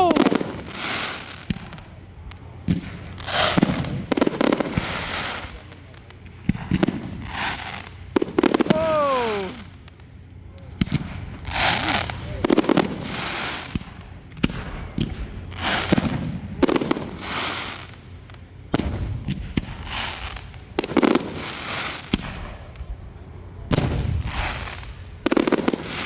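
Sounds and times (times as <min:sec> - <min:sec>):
firework hiss: 0:00.0 - 0:01.8, 0:03.0 - 0:05.7, 0:06.5 - 0:09.8, 0:10.9 - 0:18.0, 0:18.8 - 0:22.3
fireworks bangs: 0:00.0 - 0:02.0, 0:02.6 - 0:10.1, 0:10.8 - 0:18.0, 0:18.7 - 0:22.7, 0:23.7 - 0:26.0.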